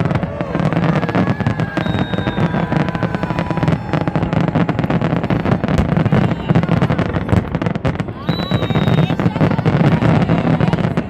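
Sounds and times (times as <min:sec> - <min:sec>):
firework whistle: 0:00.0 - 0:11.0
fireworks bangs and crackles: 0:00.0 - 0:11.0.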